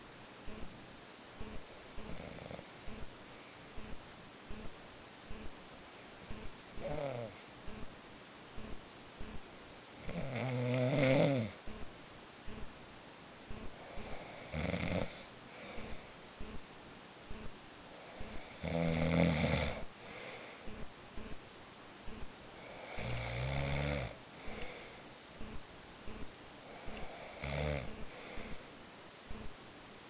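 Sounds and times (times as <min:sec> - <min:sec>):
loud rattling snoring: 0:10.0 - 0:11.6, 0:14.0 - 0:15.2, 0:18.3 - 0:19.8, 0:22.9 - 0:24.2, 0:27.2 - 0:27.9.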